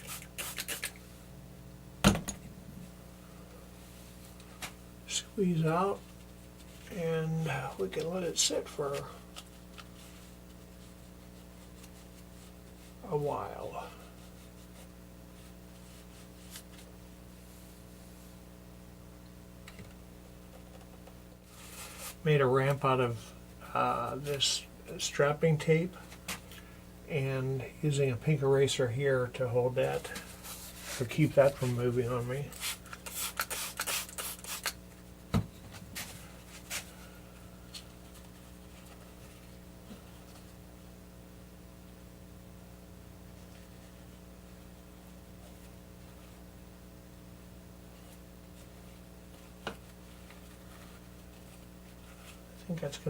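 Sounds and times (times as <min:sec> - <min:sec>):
low electrical hum: 0:00.0 - 0:53.0
rubbing and clicking handling: 0:29.8 - 0:34.8.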